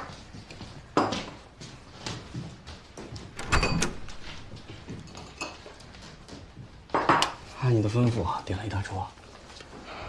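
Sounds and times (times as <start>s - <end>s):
objects knocking and clattering: 0.0s - 7.5s.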